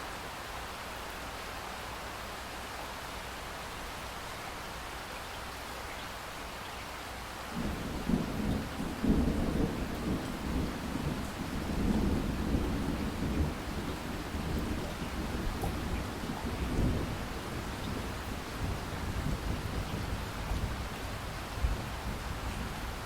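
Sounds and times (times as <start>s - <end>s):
steady rain hiss: 0.0s - 23.0s
low rumble of thunder: 7.6s - 23.0s.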